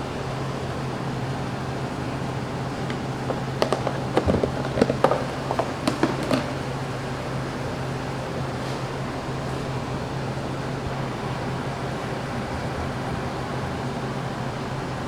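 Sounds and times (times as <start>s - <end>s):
steady ventilation hum: 0.0s - 15.0s
clicks and knocks of kitchen utensils: 2.8s - 6.7s.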